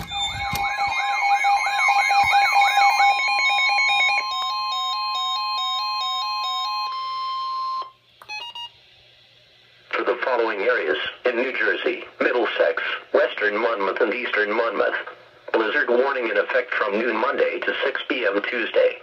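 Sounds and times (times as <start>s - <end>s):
clicks: 0.0s - 1.0s
electronic siren tones: 0.0s - 8.7s
steady alarm tone: 0.0s - 8.8s.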